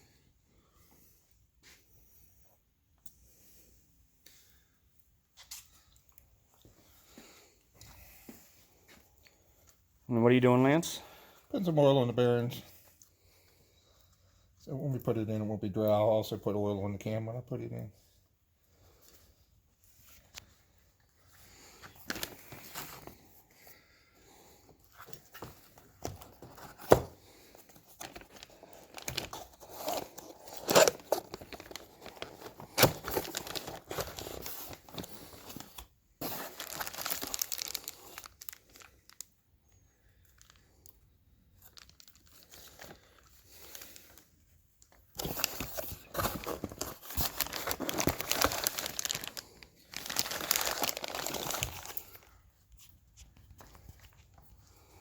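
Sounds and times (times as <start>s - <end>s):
wrapping crinkling and tearing: 26.2s - 39.3s, 40.3s - 52.4s.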